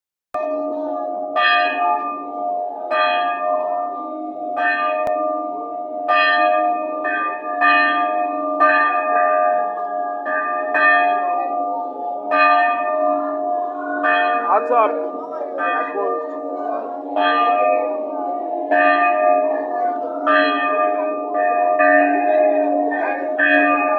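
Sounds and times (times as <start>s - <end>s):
church bell ringing: 0.4s - 23.9s.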